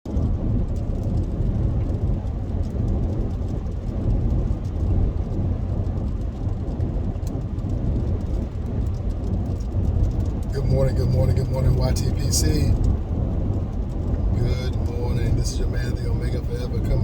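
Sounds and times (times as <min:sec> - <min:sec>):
faint ticks: 0:00.1 - 0:10.5
car cabin road rumble: 0:00.1 - 0:17.0.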